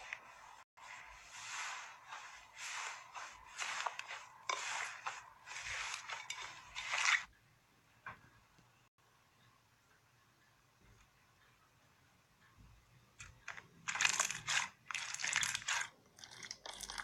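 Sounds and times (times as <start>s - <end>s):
slime squelching and crackling: 13.9s - 17.0s.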